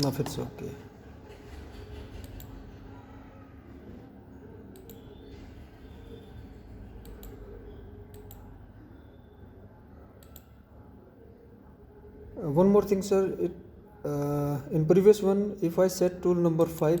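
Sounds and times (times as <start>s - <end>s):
computer mouse clicking: 1.6s - 2.6s, 4.7s - 5.3s, 6.8s - 8.5s, 10.2s - 10.6s.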